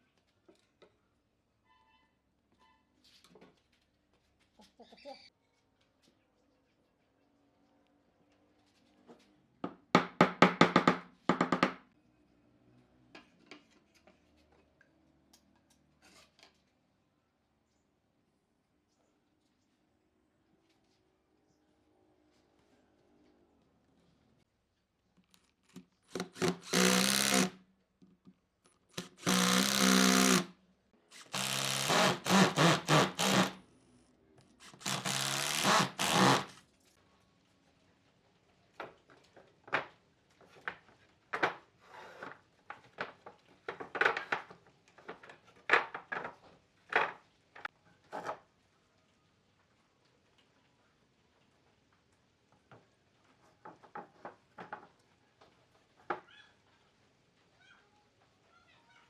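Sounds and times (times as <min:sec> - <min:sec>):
power drill whirring: 0:26.1 - 0:27.6, 0:29.0 - 0:30.5, 0:31.1 - 0:33.6, 0:34.6 - 0:36.6.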